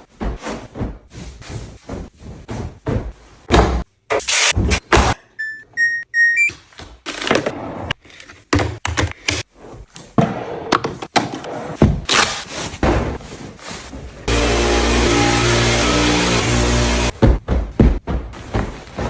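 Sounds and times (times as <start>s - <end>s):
irregular knocks and thuds: 0.0s - 3.9s, 10.2s - 12.1s, 17.1s - 19.0s
short electronic beeps: 5.4s - 6.6s.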